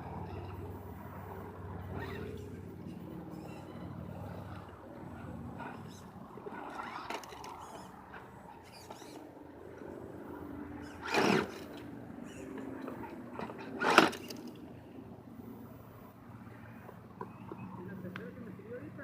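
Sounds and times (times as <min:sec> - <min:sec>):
rc car electric motor: 0:01.8 - 0:02.5, 0:03.3 - 0:09.3, 0:10.8 - 0:14.6
tyres clicking and scraping: 0:01.9 - 0:10.0, 0:10.8 - 0:14.6.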